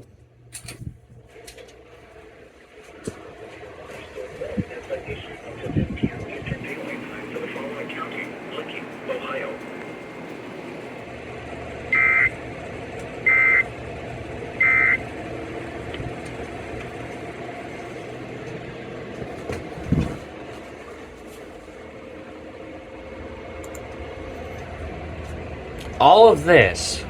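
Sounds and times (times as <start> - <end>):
radio hiss: 4.0 - 10.8.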